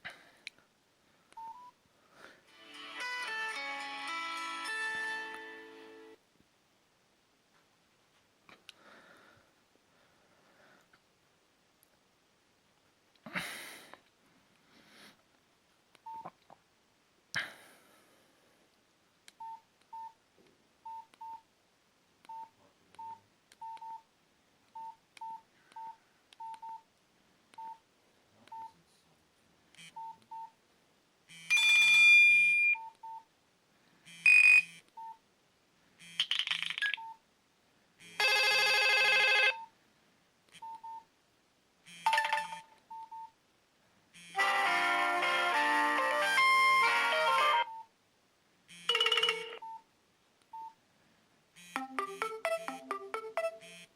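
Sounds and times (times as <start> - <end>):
phone keypad beeps: 22.3 - 24.0, 34.1 - 35.2, 42.0 - 43.3, 48.8 - 49.8, 50.5 - 50.8
phone ringtones playing: 31.4 - 32.8, 34.1 - 34.8, 38.0 - 39.7, 41.9 - 43.2, 44.2 - 47.8, 48.7 - 49.8, 51.6 - 53.9.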